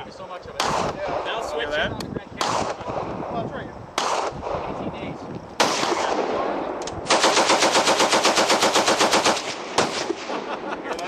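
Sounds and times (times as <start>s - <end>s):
single gunshot: 0.6s - 1.2s, 2.4s - 3.1s, 4.0s - 4.7s, 5.6s - 7.6s, 9.2s - 10.6s
automatic gunfire burst: 2.4s - 3.1s, 4.0s - 4.7s, 5.6s - 10.5s.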